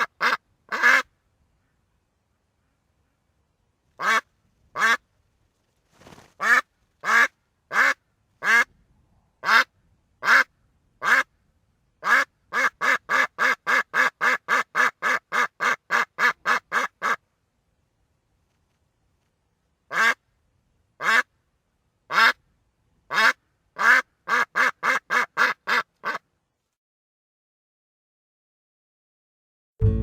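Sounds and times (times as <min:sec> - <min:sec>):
duck quacking: 0:00.0 - 0:01.8, 0:04.0 - 0:05.0, 0:06.4 - 0:08.7, 0:09.4 - 0:11.3, 0:12.0 - 0:17.2, 0:19.9 - 0:20.2, 0:21.0 - 0:21.3, 0:22.1 - 0:22.4, 0:23.1 - 0:26.2.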